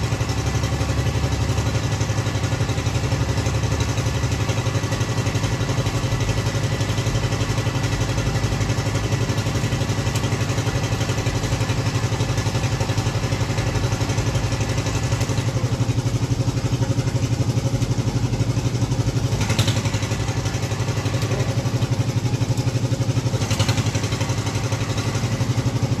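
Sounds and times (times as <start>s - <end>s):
machine engine running: 0.0s - 26.0s.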